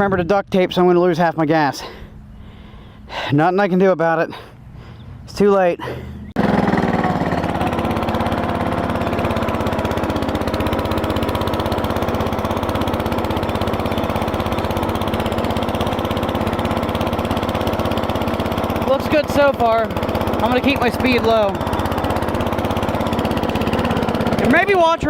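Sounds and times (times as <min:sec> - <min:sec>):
small tractor engine putter: 0:06.4 - 0:25.0.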